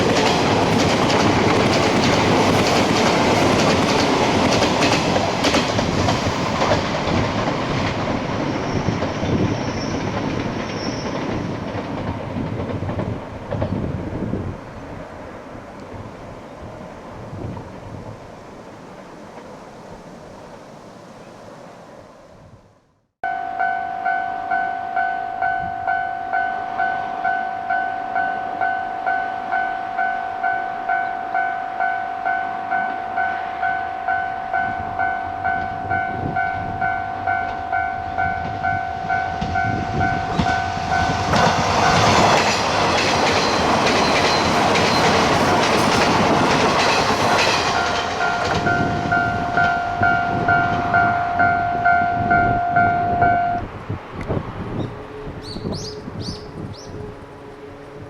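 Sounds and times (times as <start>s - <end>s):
train wheels clattering: 0.0s - 14.0s, 37.4s - 51.6s
level crossing warning bell: 23.2s - 46.1s, 46.7s - 53.6s.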